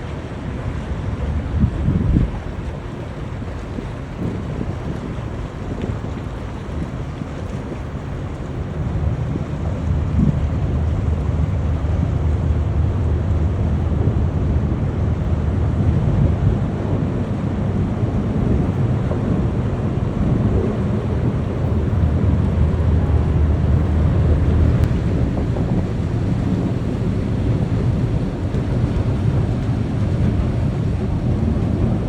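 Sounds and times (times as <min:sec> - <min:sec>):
ship engine rumble: 0:00.0 - 0:32.0
wind noise: 0:00.0 - 0:32.0.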